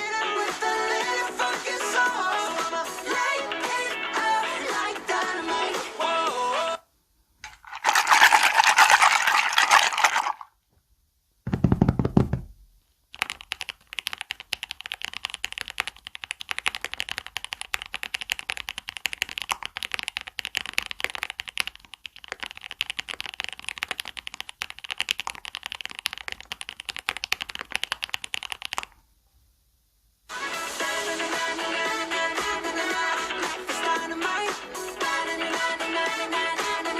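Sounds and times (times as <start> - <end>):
mechanical keyboard typing: 13.2 - 29.0.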